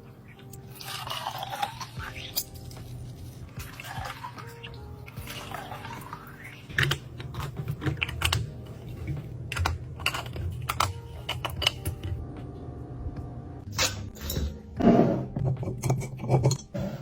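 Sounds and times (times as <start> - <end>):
household items clicking and tapping: 5.1 - 12.2.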